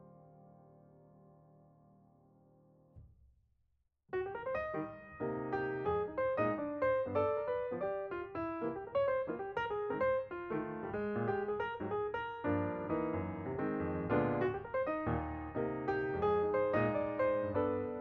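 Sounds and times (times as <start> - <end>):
piano music: 0.0 - 2.4, 4.1 - 18.0.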